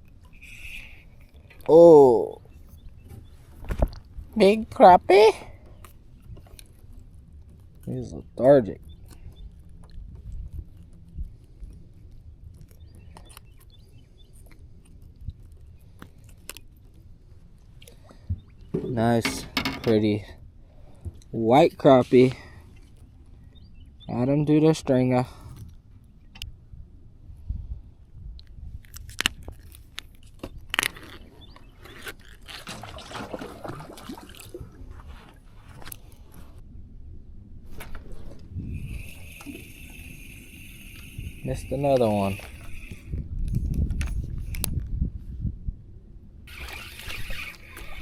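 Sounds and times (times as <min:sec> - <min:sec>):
fishing tackle clicks and knocks: 0:18.6 - 0:20.0
low steady rumble: 0:34.6 - 0:46.5.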